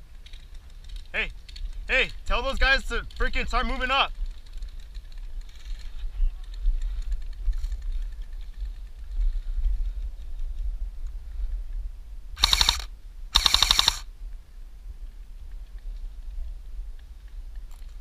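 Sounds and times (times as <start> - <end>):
airsoft rifle rapid-fire bursts: 12.4 - 14.1.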